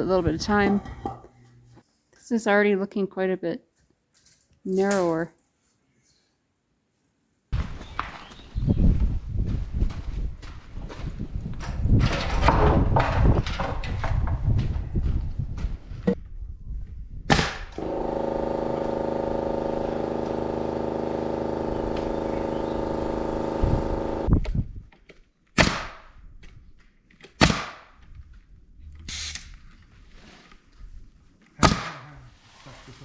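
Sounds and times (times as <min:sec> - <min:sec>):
nail gun shots: 0:17.3 - 0:18.0, 0:25.6 - 0:26.1, 0:27.4 - 0:28.0, 0:31.6 - 0:32.0
motor running: 0:17.8 - 0:24.3.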